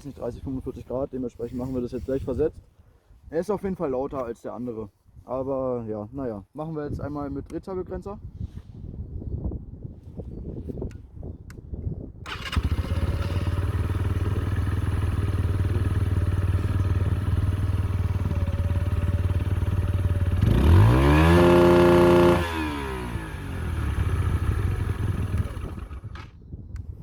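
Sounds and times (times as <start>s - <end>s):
motorcycle engine revving to limiter: 12.3s - 26.3s
motorcycle engine idling: 12.3s - 26.4s.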